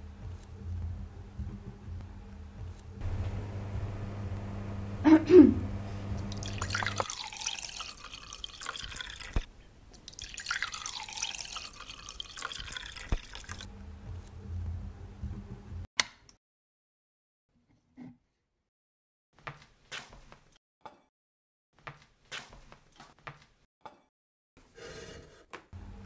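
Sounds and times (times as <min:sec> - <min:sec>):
liquid pouring: 0:06.0 - 0:13.7.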